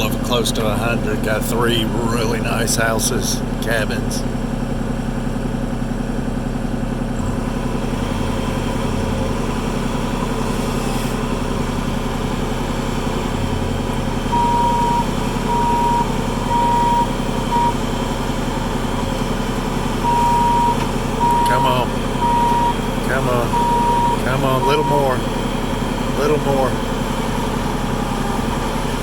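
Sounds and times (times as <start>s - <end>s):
heavy machine engine running: 0.0s - 29.0s
backup alarm beeping: 14.2s - 18.3s, 20.0s - 25.4s.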